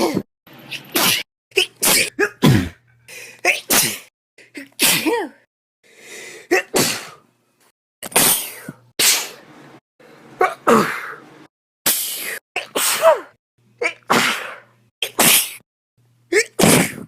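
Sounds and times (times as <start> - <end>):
person sneezing: 0.0 - 5.5, 6.5 - 7.2, 8.0 - 9.4, 10.4 - 11.2, 11.8 - 15.6, 16.3 - 17.0.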